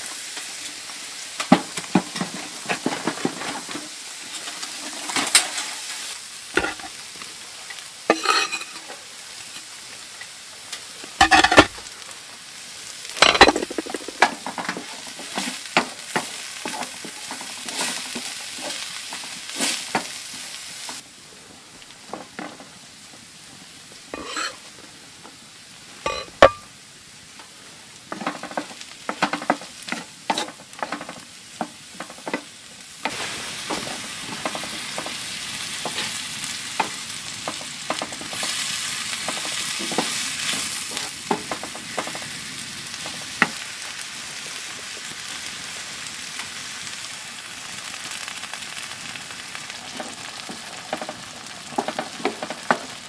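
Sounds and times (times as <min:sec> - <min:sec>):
food sizzling in a pan: 0:00.0 - 0:53.0
utensil knocking against pan: 0:06.6 - 0:06.9, 0:11.2 - 0:11.8, 0:13.2 - 0:14.2, 0:24.2 - 0:24.6, 0:26.1 - 0:26.6.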